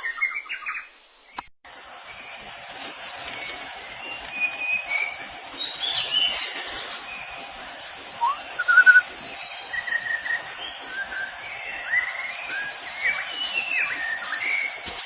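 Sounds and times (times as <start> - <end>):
steady high hiss: 0.0 - 15.0
bird singing whistled notes: 8.2 - 14.8.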